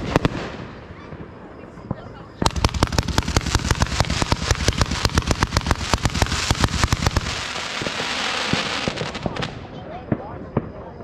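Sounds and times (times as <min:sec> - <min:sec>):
firework cake popping: 0:01.9 - 0:10.8
hissing crackle: 0:02.4 - 0:09.9.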